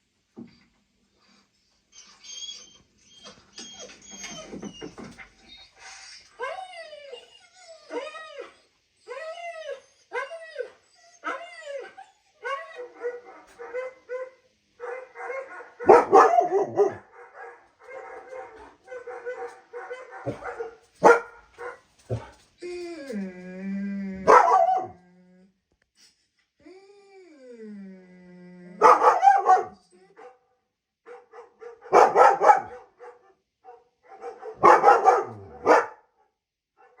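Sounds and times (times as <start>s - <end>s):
dog yelping whines: 2.0s - 14.3s, 24.2s - 24.9s
dog howling: 6.4s - 20.8s, 22.1s - 25.1s, 27.6s - 29.8s
dog barking: 14.8s - 22.3s, 24.3s - 25.0s, 28.8s - 30.4s, 31.1s - 36.1s, 36.8s - 37.0s.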